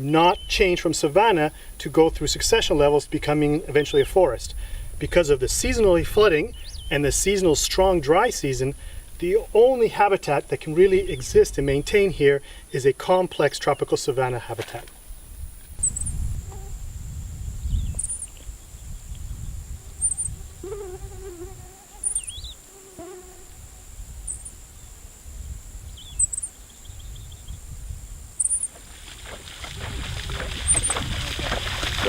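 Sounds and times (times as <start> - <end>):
high insect whine: 0.0 - 13.0, 14.1 - 32.0
water sloshing: 28.8 - 32.0.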